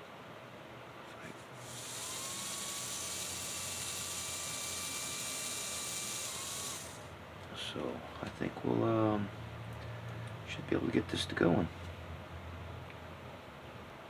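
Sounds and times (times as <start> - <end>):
model train motor whine: 1.6 - 7.1.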